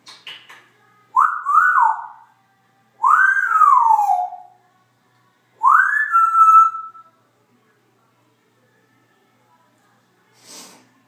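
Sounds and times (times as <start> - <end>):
parrot whistling: 1.2 - 2.2, 3.0 - 4.4, 5.6 - 7.1.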